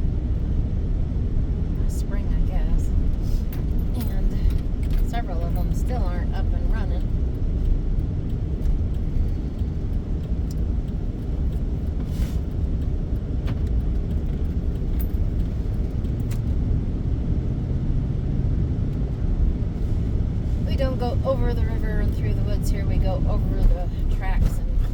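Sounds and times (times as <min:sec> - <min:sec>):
van engine and tyre rumble: 0:00.0 - 0:24.9.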